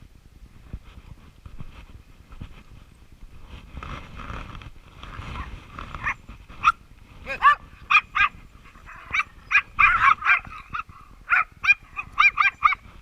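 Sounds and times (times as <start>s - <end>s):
dog yapping: 5.4s - 12.8s.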